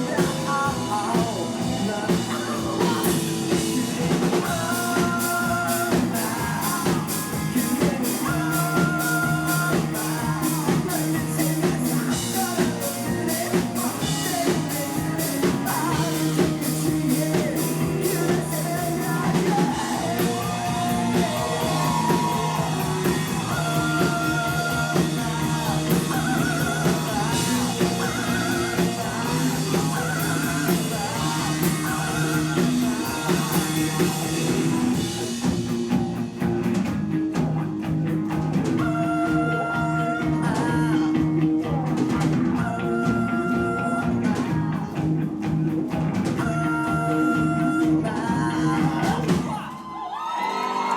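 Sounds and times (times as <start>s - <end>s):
person singing: 0.0s - 36.3s, 38.6s - 45.2s, 45.9s - 50.9s
drum kit steady beat: 0.0s - 49.7s
bass guitar: 0.0s - 50.9s
electric guitar: 0.0s - 50.9s.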